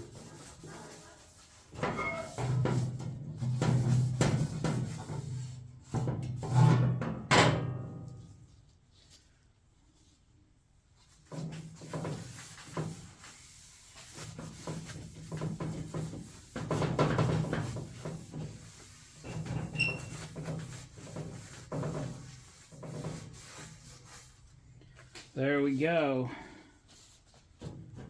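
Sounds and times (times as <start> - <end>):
rag rubbing over metal panels: 0.0 - 7.0, 11.0 - 26.1.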